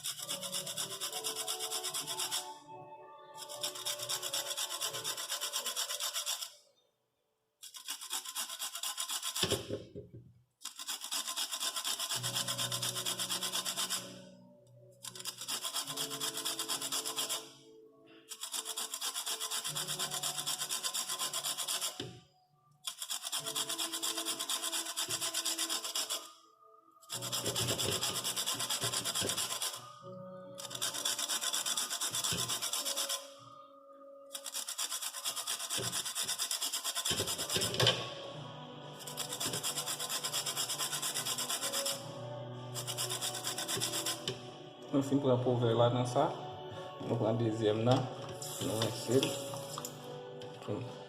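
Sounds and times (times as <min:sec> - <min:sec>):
grating on a hand grater: 0:00.0 - 0:02.4, 0:03.4 - 0:06.5, 0:07.6 - 0:09.7, 0:10.7 - 0:14.2, 0:15.1 - 0:17.4, 0:18.4 - 0:22.0, 0:23.0 - 0:26.2, 0:27.1 - 0:29.8, 0:30.6 - 0:33.2, 0:34.4 - 0:37.8, 0:39.1 - 0:42.0, 0:42.8 - 0:44.2.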